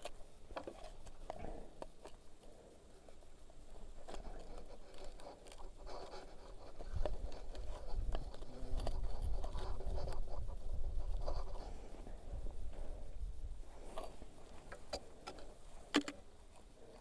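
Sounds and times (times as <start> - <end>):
scraping and scratching: 0.0 - 13.0.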